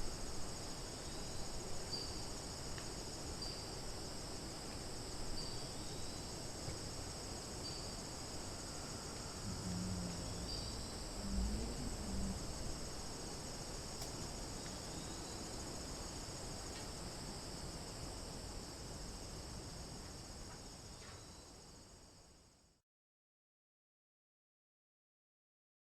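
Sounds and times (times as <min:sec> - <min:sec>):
crickets and cicadas chirping: 0:00.0 - 0:22.8
low rumble: 0:09.3 - 0:14.0.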